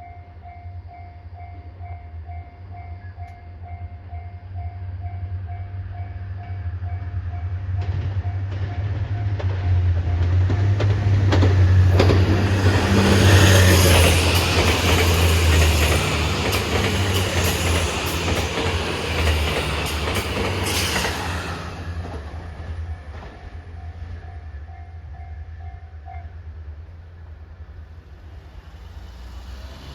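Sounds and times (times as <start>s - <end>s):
train passing at speed: 0.0s - 29.9s.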